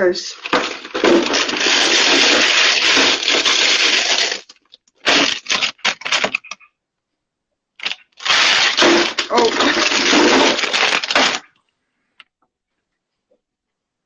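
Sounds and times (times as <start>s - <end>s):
plastic packaging crinkling: 0.3s - 6.6s, 7.8s - 11.7s.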